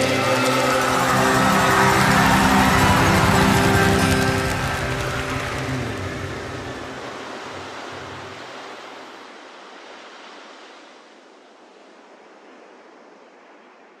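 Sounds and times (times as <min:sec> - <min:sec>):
low music notes: 0:00.0 - 0:08.6
surf-like rushing noise: 0:00.0 - 0:14.0.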